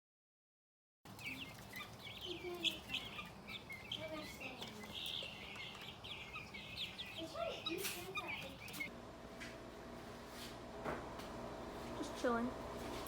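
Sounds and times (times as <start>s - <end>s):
budgies chirping: 1.1s - 8.9s.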